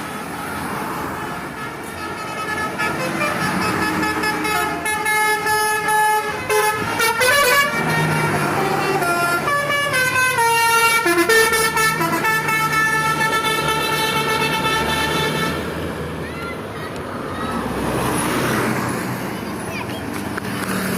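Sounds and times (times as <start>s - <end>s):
road noise: 0.0s - 20.9s
musical air horn tune: 1.6s - 15.6s.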